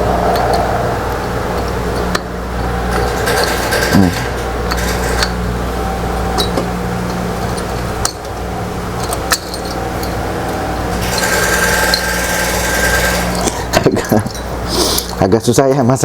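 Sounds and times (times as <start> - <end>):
steady mechanical hum: 0.0 - 16.0
handling noise: 1.5 - 15.0
bright whirring: 9.0 - 14.8.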